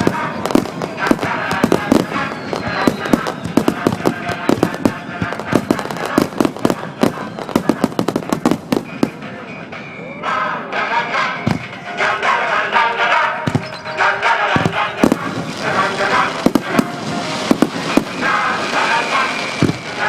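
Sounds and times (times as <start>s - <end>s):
fireworks bangs: 0.0s - 9.5s, 13.4s - 13.8s, 14.4s - 20.0s
music: 0.0s - 20.0s.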